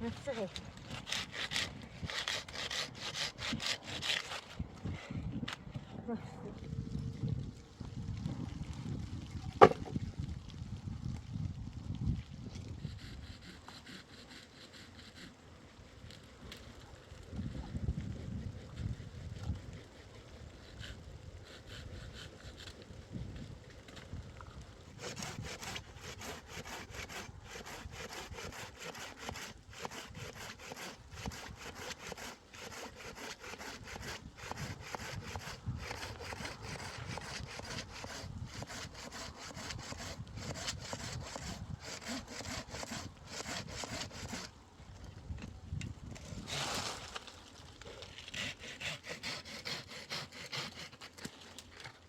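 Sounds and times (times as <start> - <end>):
hand saw cutting wood: 0.0 - 5.0, 12.8 - 15.4, 18.3 - 22.8, 24.9 - 44.5, 46.1 - 47.2, 47.9 - 52.0.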